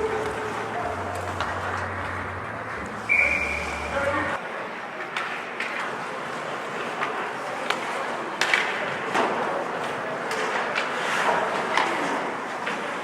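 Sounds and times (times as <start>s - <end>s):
hockey sticks and puck clacking: 0.0s - 3.9s, 5.0s - 6.1s, 6.8s - 13.0s
skates on ice: 0.0s - 4.4s, 5.0s - 13.0s
crowd murmur: 0.0s - 5.1s.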